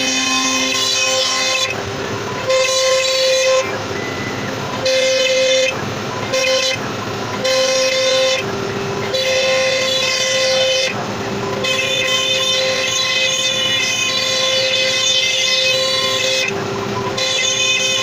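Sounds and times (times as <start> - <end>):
horn-like music chords: 0.0 - 1.7.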